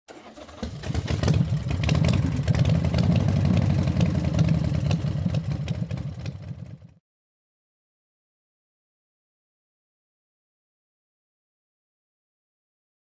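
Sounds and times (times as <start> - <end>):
motorcycle engine running: 0.4 - 7.0.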